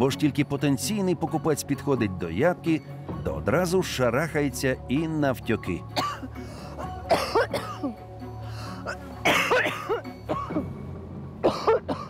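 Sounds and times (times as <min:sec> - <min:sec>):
background music: 0:00.0 - 0:12.0
woman coughing: 0:06.0 - 0:06.3, 0:07.1 - 0:07.9, 0:09.2 - 0:10.7, 0:11.4 - 0:12.0.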